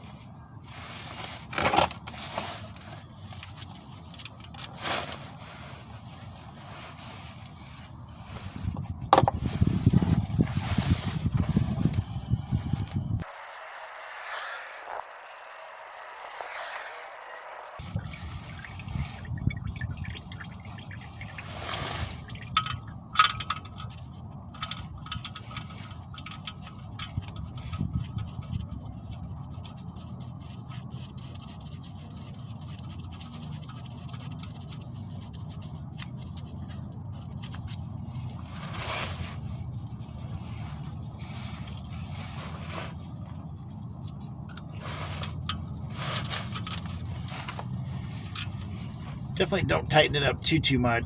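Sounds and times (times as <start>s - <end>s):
oil dripping into drain pan: 18.0s - 21.5s
tools clicking and knocking: 22.5s - 27.9s.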